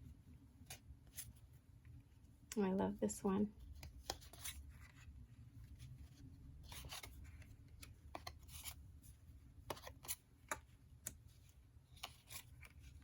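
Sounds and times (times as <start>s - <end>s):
cards rustling: 3.6s - 13.0s.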